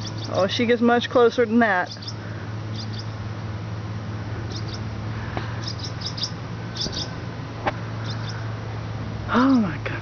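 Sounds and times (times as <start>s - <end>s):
bird chirping: 0.0s - 0.6s, 1.8s - 3.2s, 4.5s - 4.9s, 5.5s - 7.2s, 8.0s - 8.5s
steady low hum: 0.0s - 10.0s.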